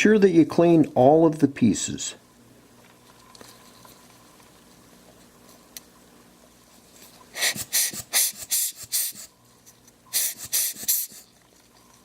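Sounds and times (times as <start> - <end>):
short hissing puffs of air: 7.3 - 9.3, 10.1 - 11.3.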